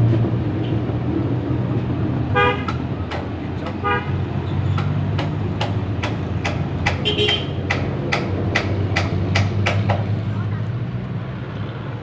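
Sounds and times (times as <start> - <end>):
low engine rumble: 0.0 - 11.9
vehicle horn toots: 2.3 - 2.8, 3.8 - 4.3, 6.9 - 7.7.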